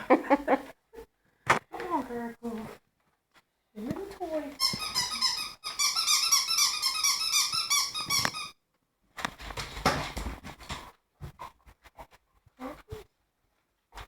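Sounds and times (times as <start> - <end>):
squeaky dog toy squeaking: 4.6 - 8.6.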